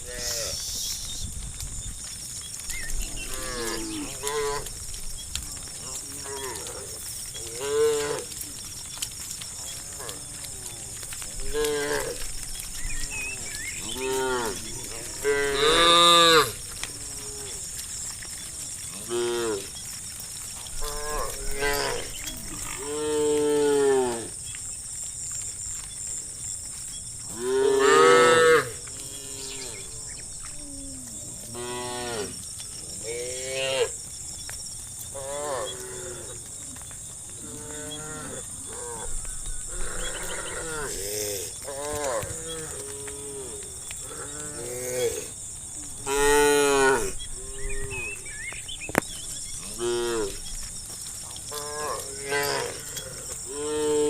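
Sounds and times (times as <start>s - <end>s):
cows mooing: 3.0s - 4.9s, 5.7s - 8.6s, 9.6s - 19.8s, 20.7s - 24.4s, 27.3s - 30.2s, 37.4s - 39.1s, 39.7s - 45.3s, 46.0s - 48.2s, 49.4s - 50.5s, 51.4s - 54.0s.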